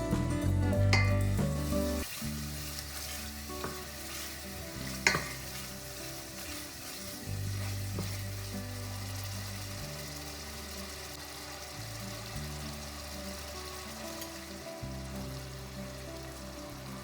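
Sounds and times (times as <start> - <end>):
food sizzling in a frying pan: 0.9 - 17.0
utensil clinking against pan: 5.0 - 5.4.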